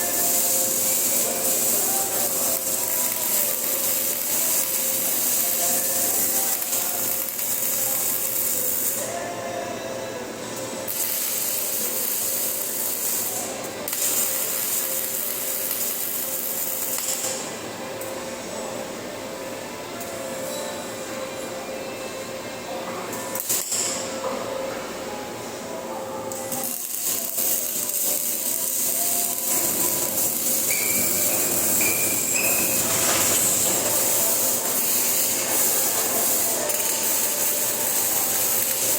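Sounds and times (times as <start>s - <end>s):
welding arc crackling: 0.0s - 9.1s, 10.8s - 17.5s, 23.3s - 24.1s, 26.4s - 38.9s.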